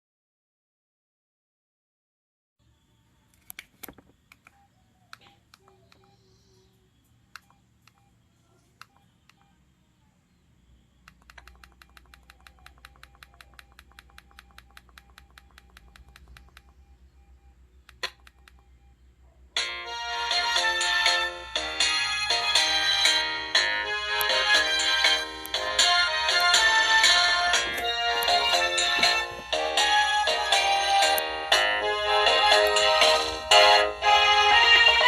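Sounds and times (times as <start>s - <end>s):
phone keypad button clicks: 11.1s - 16.9s, 17.8s - 18.8s.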